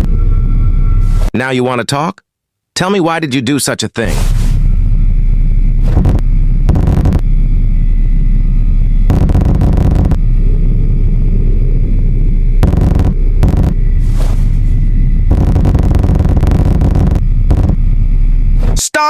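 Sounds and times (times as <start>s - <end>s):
deep hum: 0.0s - 1.2s, 4.5s - 18.6s
loud low rumble: 4.6s - 18.5s.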